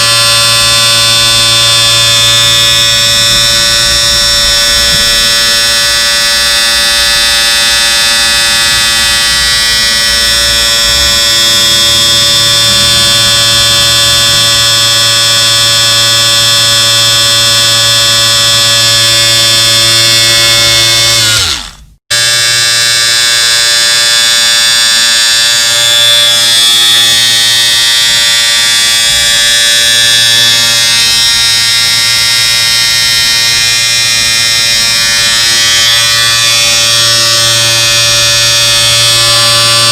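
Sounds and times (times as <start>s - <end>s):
electric shaver buzzing: 0.0s - 39.9s.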